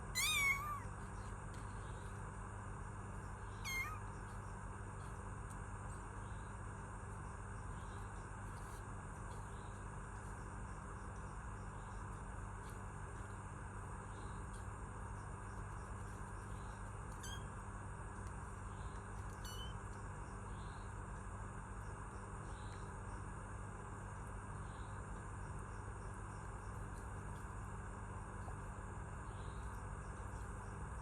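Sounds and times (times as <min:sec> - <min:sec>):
insect chirps: 0:03.1 - 0:04.7, 0:06.2 - 0:08.3, 0:09.3 - 0:12.2, 0:14.0 - 0:17.7, 0:18.5 - 0:23.6, 0:24.3 - 0:31.0.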